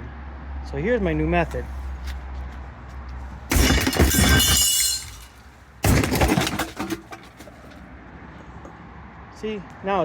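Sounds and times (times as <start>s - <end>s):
coffee maker being smashed: 3.5s - 7.5s
breaking parts shattering and rattling: 3.5s - 7.8s.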